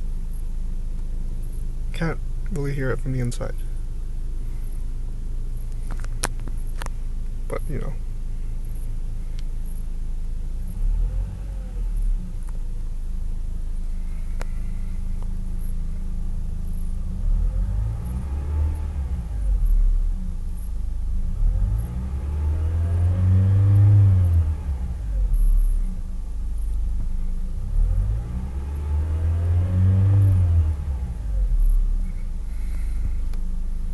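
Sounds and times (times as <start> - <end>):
car engine revving: 10.4 - 12.5, 13.7 - 33.9.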